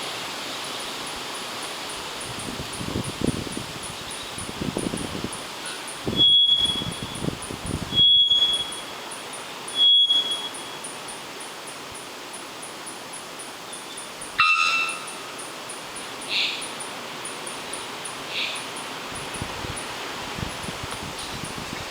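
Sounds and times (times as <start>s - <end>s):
insect ticking: 1.6s - 21.9s
bird whistling: 5.7s - 7.2s, 7.9s - 8.9s, 9.7s - 10.8s, 14.4s - 15.3s
bird bonk call: 14.4s - 15.4s.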